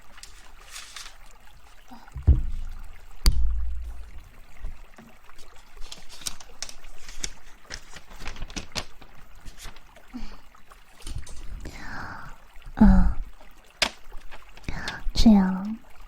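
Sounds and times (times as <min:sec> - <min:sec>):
heavy low thumps: 0:02.2 - 0:04.6.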